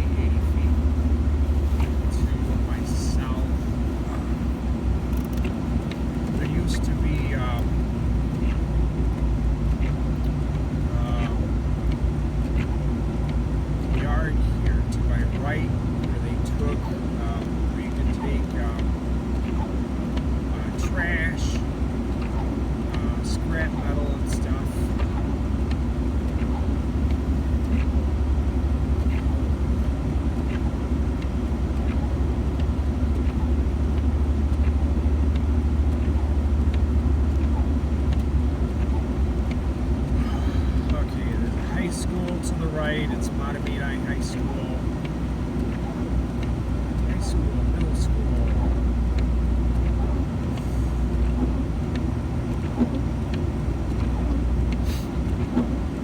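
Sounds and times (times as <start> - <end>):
vehicle cabin road rumble: 0.0 - 56.0
faint clicks: 0.1 - 56.0
faint light ticks: 0.2 - 56.0.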